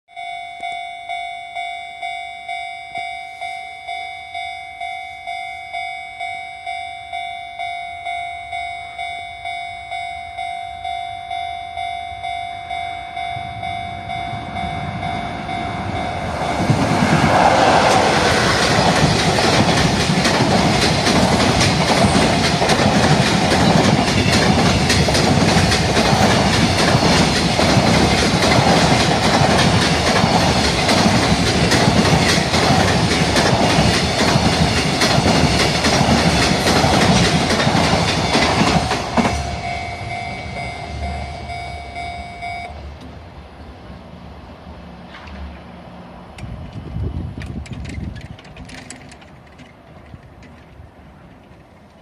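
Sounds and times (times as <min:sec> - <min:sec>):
level crossing bell ringing: 0:00.1 - 0:16.9, 0:38.3 - 0:42.7
train wheels clattering: 0:14.3 - 0:40.8, 0:47.4 - 0:52.0.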